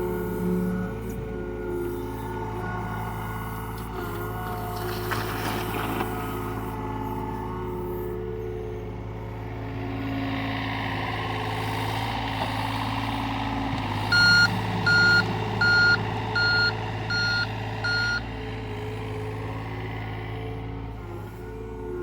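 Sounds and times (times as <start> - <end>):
excavator diesel engine running: 0.0 - 22.0
warning alarm beeping: 14.1 - 18.2.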